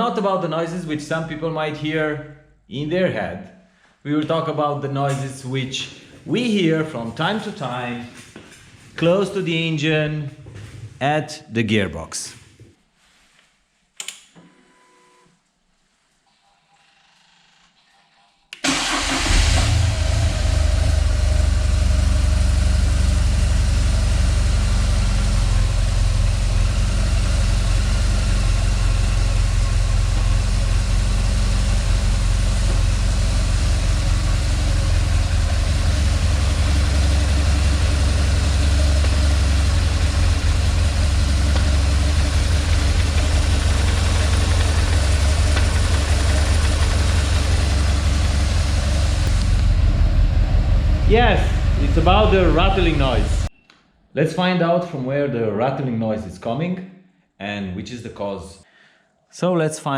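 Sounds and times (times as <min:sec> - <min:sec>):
motorcycle engine idling: 0:20.4 - 0:53.5.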